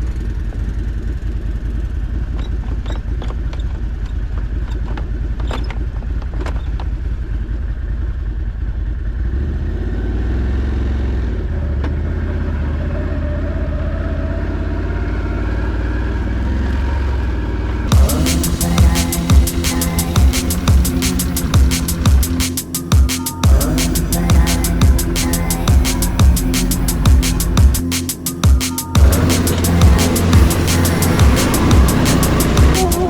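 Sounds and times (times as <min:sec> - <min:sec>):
atv engine running: 0:14.4 - 0:22.4, 0:23.4 - 0:27.8, 0:29.0 - 0:33.0.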